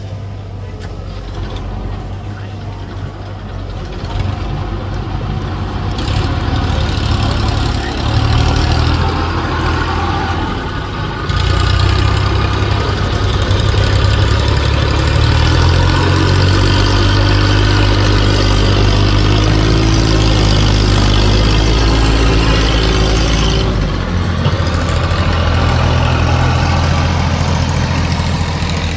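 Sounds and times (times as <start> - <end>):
diesel engine running: 0.0 - 28.9.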